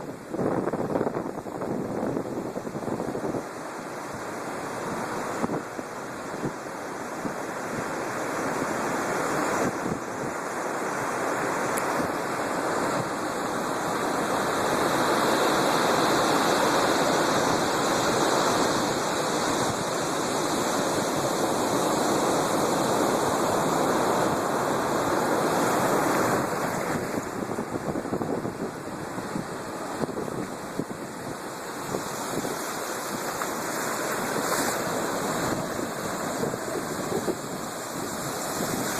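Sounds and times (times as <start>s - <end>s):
heavy waves breaking: 0.0s - 38.9s.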